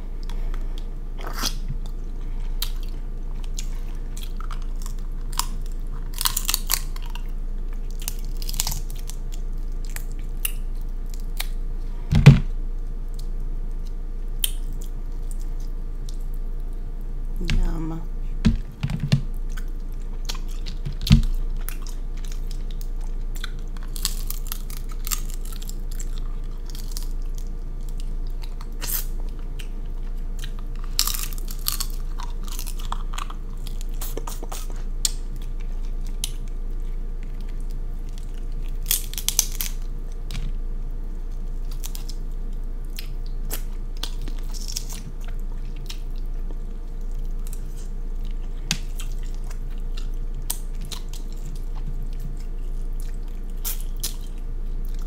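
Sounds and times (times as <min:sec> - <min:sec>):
person chewing: 0:00.1 - 0:12.0, 0:19.2 - 0:40.3, 0:41.0 - 0:55.0
crab shell cracking: 0:08.0 - 0:11.6, 0:37.4 - 0:39.8.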